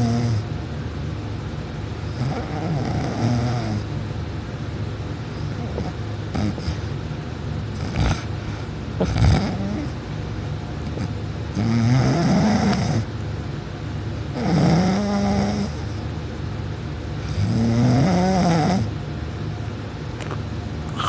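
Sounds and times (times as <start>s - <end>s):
faint breath: 8.1s - 8.8s
person snoring loudly: 9.0s - 9.9s, 11.6s - 13.0s, 14.4s - 15.8s, 17.3s - 18.9s.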